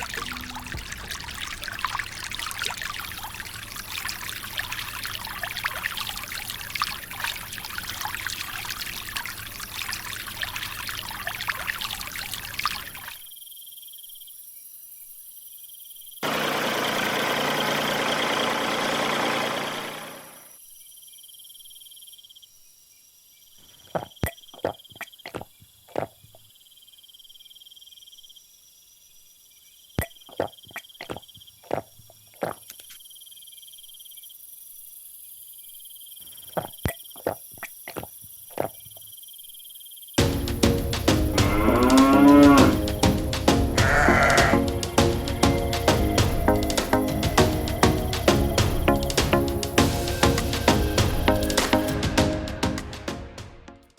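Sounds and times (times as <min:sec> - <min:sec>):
water splashing and trickling: 0:00.0 - 0:13.3, 0:30.0 - 0:32.9, 0:36.3 - 0:39.2, 0:40.2 - 0:53.1
crickets chirping: 0:00.0 - 0:16.3, 0:20.3 - 0:42.8.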